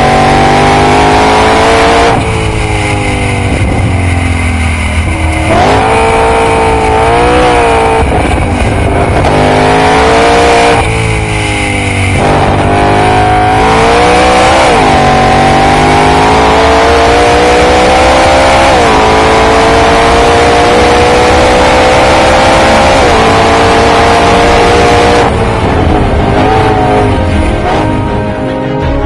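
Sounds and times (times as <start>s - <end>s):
racing car engine revving: 0.0s - 28.2s.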